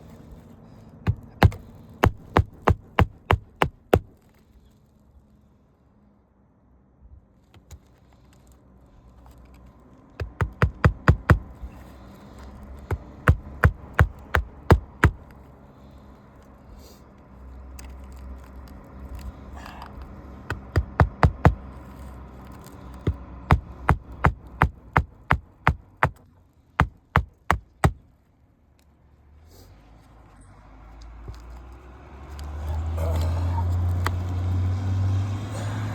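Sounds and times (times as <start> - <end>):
hammer blows on shingle roof: 1.0 - 4.2, 10.2 - 15.3, 20.5 - 22.1, 23.0 - 26.2, 26.8 - 28.0.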